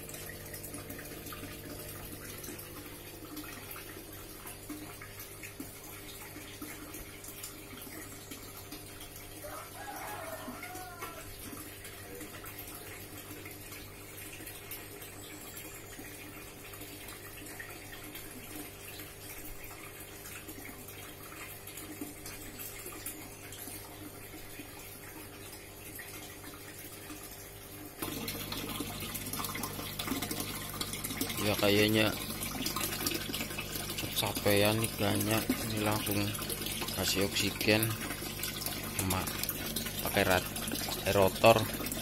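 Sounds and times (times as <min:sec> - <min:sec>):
water running: 0:00.0 - 0:42.0.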